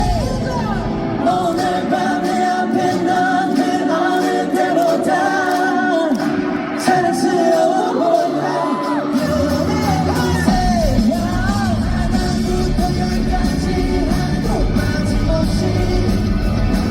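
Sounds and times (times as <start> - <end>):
many voices singing along: 0.0 - 16.9
pop-rock song: 0.0 - 16.9.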